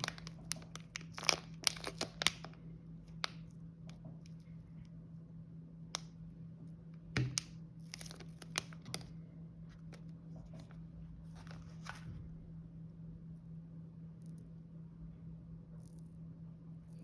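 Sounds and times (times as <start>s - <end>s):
snack packaging crinkling: 0.0s - 3.4s, 7.3s - 9.1s.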